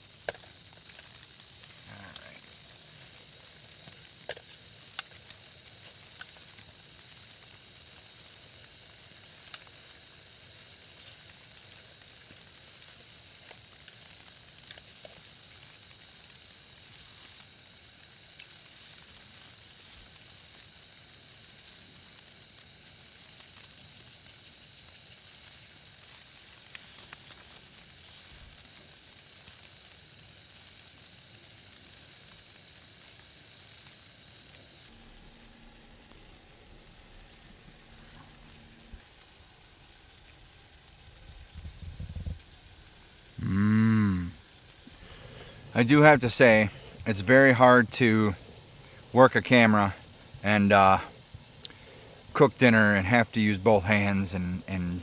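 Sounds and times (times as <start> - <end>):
beans sizzling in butter: 0.0 - 55.0
faint high whine: 32.7 - 55.0.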